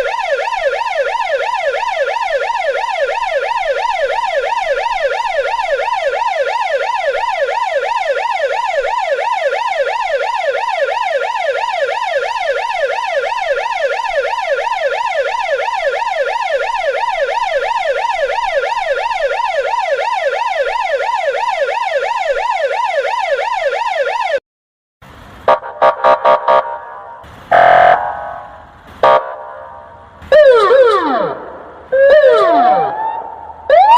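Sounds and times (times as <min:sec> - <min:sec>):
police siren yelping: 0:00.0 - 0:24.4, 0:25.5 - 0:33.9
short quacking siren blasts: 0:25.5 - 0:33.9.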